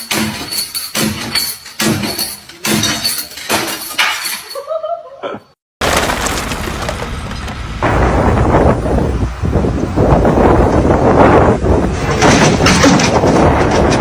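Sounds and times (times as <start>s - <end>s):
smashing and shattering strikes: 5.8s - 7.6s.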